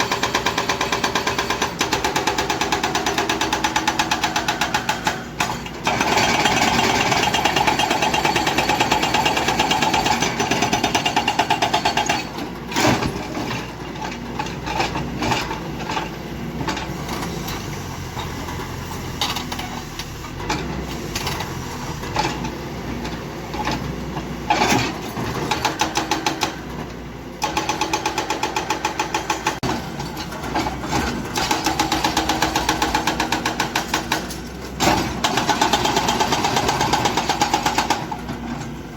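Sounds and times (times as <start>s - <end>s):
excavator engine running: 0.0s - 38.9s
hydraulic breaker hammering rock: 27.4s - 38.4s.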